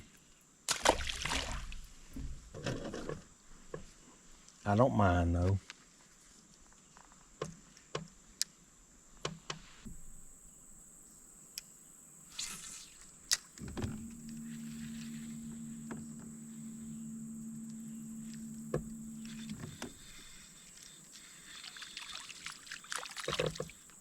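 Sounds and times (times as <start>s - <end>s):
electric trolling motor humming: 12.5s - 22.8s.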